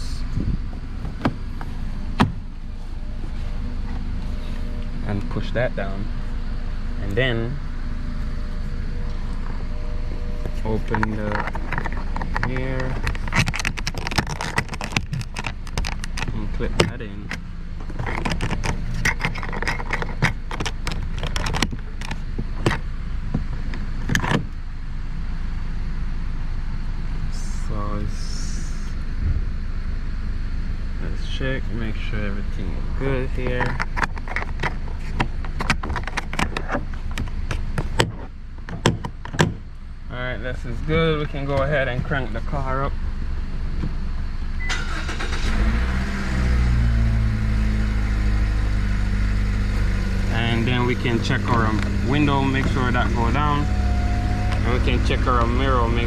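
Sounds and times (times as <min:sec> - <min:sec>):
car engine cranking and idling: 0:00.0 - 0:56.0
steady low hum: 0:00.0 - 0:56.0
ignition click: 0:44.6 - 0:45.6.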